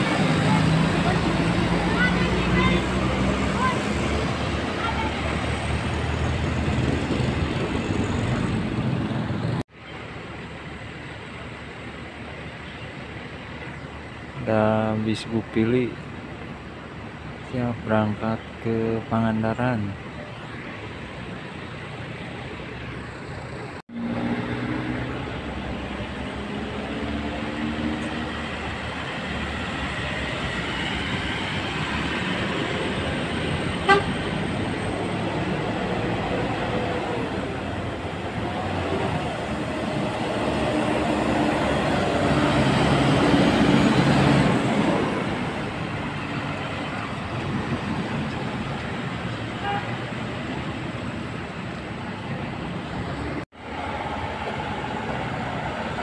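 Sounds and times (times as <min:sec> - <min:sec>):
buses and traffic running: 0:00.0 - 0:56.0
musical air horn: 0:33.8 - 0:34.3, 0:49.6 - 0:50.0.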